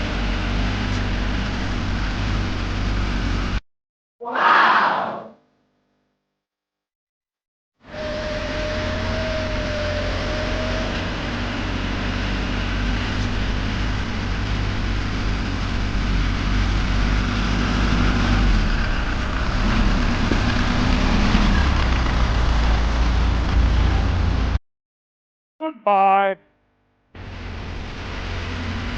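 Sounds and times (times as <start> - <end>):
vehicle engine rumbling: 0.0 - 3.6, 8.0 - 24.6, 27.2 - 28.9.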